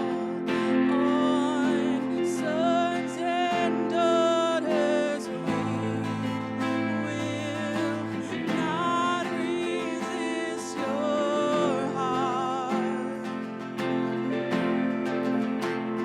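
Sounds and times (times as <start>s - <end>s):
worship band with acoustic guitar: 0.0s - 16.0s.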